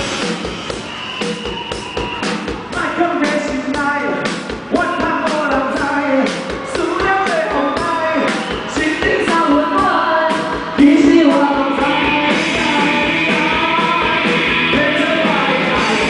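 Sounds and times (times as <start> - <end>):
live rock band playing: 0.0 - 16.0
steady drum beat: 0.0 - 16.0
person singing: 5.8 - 16.0.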